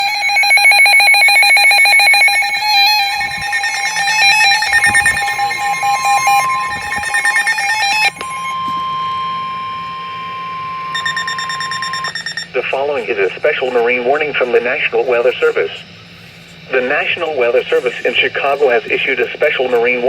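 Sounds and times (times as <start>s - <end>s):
rapid electronic alert beeps: 0.0s - 12.8s
steady warning alarm tone: 0.0s - 20.0s.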